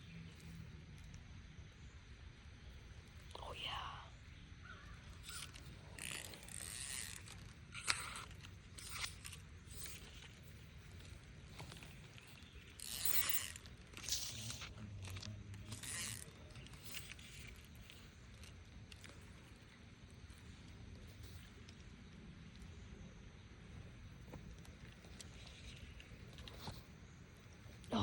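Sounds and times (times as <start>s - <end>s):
fishing reel ratcheting whir: 4.7s - 19.6s.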